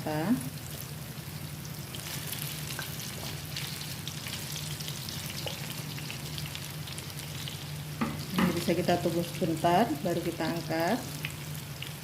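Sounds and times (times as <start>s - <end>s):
eggplants sizzling in hot oil: 0.0s - 12.0s
low steady hum: 0.0s - 12.0s.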